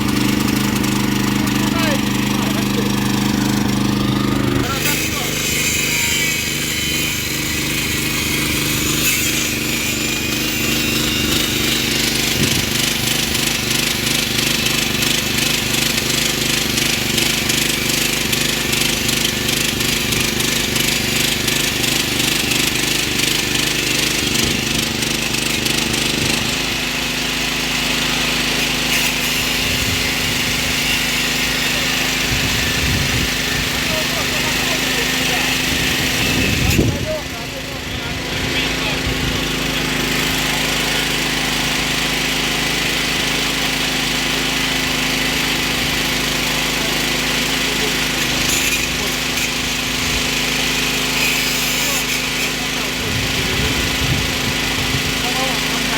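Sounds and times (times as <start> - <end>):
combine harvester running: 0.0 - 55.9.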